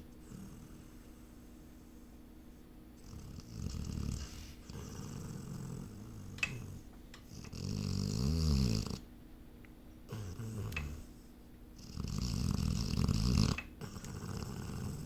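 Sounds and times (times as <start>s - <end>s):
animal snoring: 0.2s - 1.2s, 3.0s - 9.1s, 10.1s - 11.2s, 11.8s - 15.0s.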